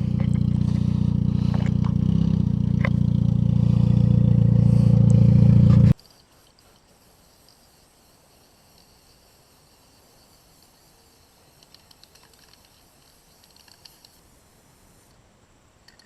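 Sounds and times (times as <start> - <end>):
car engine running: 0.0 - 6.0
faint background noise: 5.9 - 16.0.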